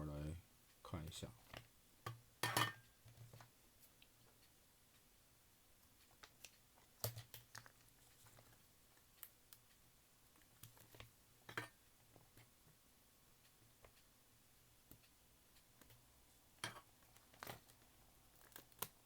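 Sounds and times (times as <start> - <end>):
small tools clicking and tapping: 6.0 - 9.8, 16.6 - 19.0.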